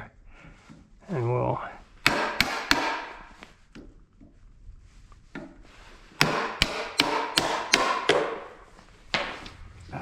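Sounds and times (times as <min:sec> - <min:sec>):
hand tool striking a log: 0:02.0 - 0:03.9, 0:06.2 - 0:08.5.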